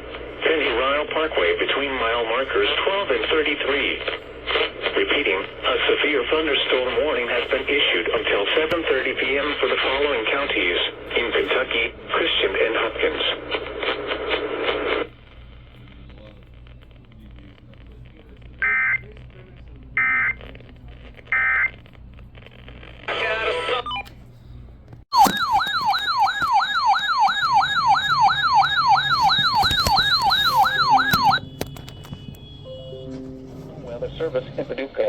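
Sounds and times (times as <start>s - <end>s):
electronic siren-like warble: 25.1s - 33.3s.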